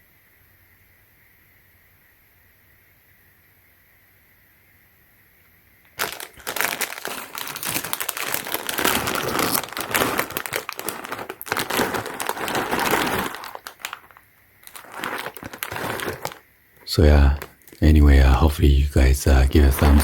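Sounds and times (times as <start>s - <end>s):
plastic packaging crinkling: 5.9s - 17.8s, 19.4s - 20.0s.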